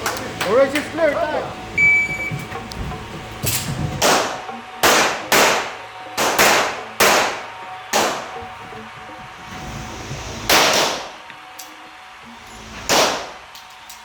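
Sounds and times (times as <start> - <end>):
pistol shots with echo: 4.0 - 8.3, 10.5 - 11.1, 12.9 - 13.4.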